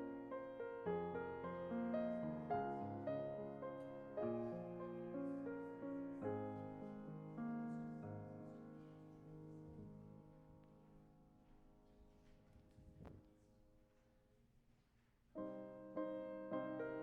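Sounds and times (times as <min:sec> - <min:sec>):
piano playing slow chords: 0:00.0 - 0:12.1, 0:15.4 - 0:17.0.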